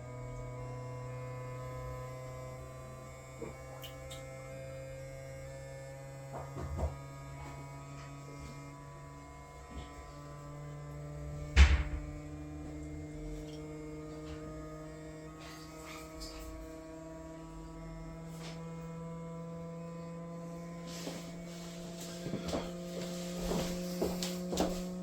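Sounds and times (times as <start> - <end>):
loud thump: 11.6 - 12.0.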